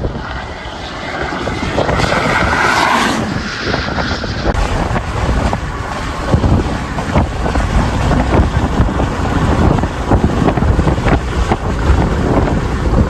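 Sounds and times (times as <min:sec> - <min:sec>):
strong wind buffeting microphone: 0:00.0 - 0:13.0.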